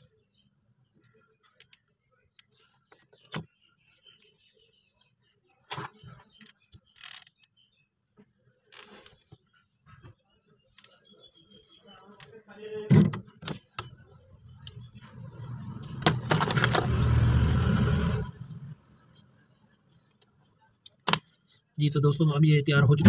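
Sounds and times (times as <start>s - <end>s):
scraping of plastic parts: 15.0s - 18.4s.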